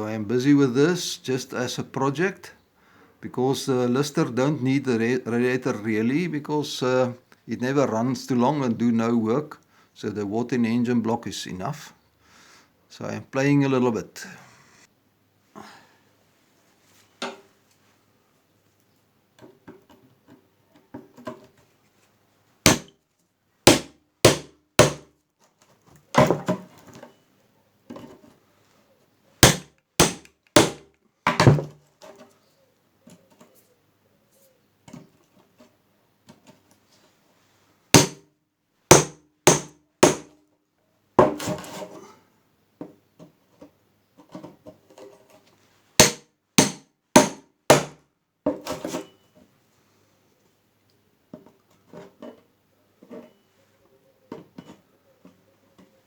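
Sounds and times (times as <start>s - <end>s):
hammer striking metal radiator: 22.7s - 22.9s, 23.7s - 25.0s, 29.4s - 30.8s, 38.0s - 38.2s, 38.9s - 40.3s.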